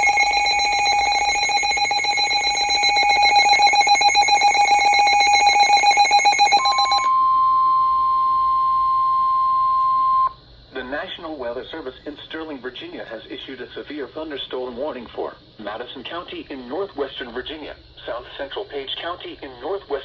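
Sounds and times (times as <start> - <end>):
rapidly pulsing electronic alarm tone: 0.0 - 7.1
steady alert tone: 0.0 - 7.1.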